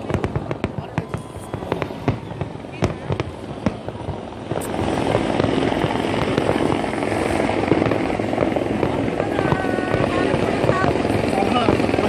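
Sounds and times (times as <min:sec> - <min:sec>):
firework bangs: 0:00.0 - 0:12.0
fireworks crackling: 0:00.0 - 0:12.0.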